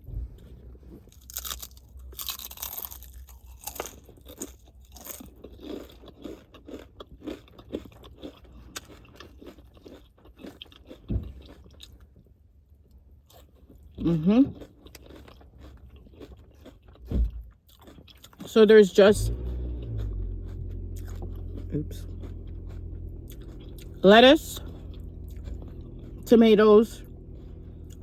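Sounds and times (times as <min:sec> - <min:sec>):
person crunching and chewing: 0:01.0 - 0:12.2, 0:12.9 - 0:28.0.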